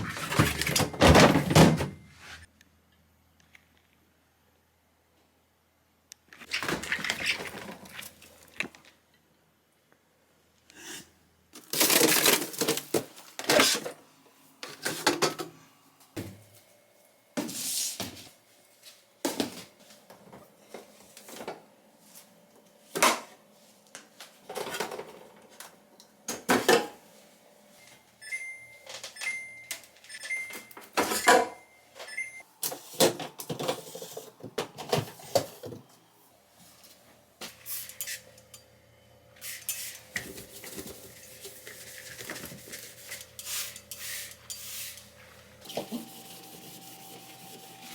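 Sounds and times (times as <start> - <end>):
household items clattering: 6.5 - 8.8.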